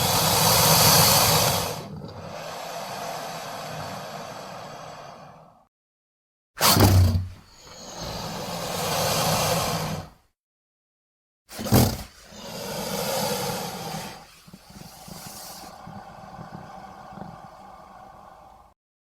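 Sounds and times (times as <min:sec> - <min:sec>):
crocodile hissing: 0:00.0 - 0:05.7, 0:06.6 - 0:10.2, 0:11.6 - 0:18.8
low growl: 0:14.8 - 0:18.8.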